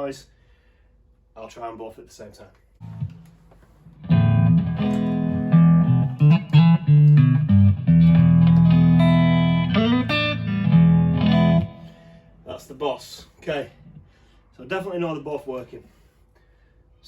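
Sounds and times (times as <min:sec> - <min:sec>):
electric guitar notes and chords: 0:02.8 - 0:12.3.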